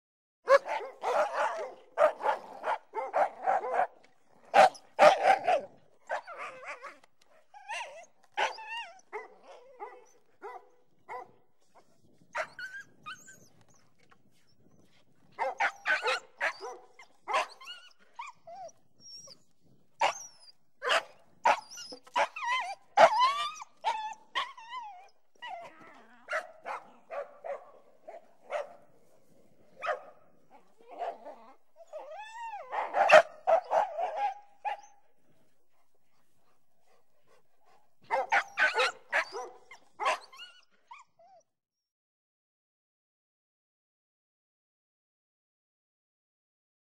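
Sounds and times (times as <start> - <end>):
dog barking: 0.5 - 7.0, 8.4 - 11.4, 15.4 - 17.6, 20.0 - 22.4, 23.0 - 23.3, 26.3 - 28.9, 29.8 - 31.5, 32.6 - 35.0, 38.1 - 40.4
dog whining and yipping: 4.6 - 11.2, 12.3 - 26.9, 29.8 - 35.0, 38.1 - 41.5.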